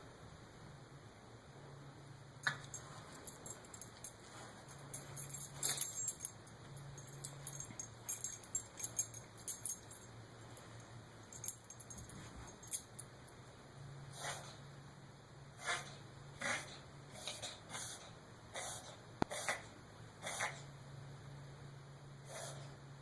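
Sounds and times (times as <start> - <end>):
dog collar tags jingling: 2.4 - 13.1.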